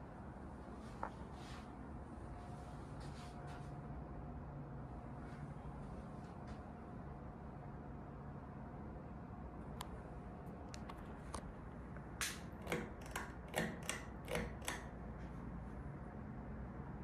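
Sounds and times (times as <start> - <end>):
ceiling fan humming: 0.0 - 17.0
sharp clicks and knocks: 12.0 - 14.9.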